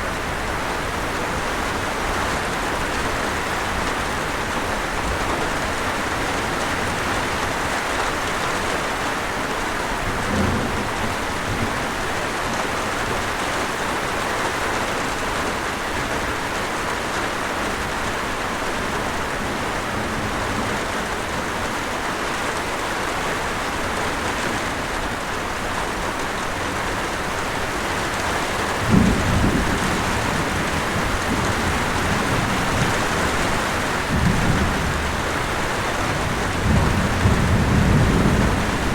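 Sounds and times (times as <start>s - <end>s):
waterfall: 0.0s - 38.9s
thunder rumbling: 9.9s - 12.2s, 26.9s - 38.9s
rain hissing: 17.4s - 38.9s.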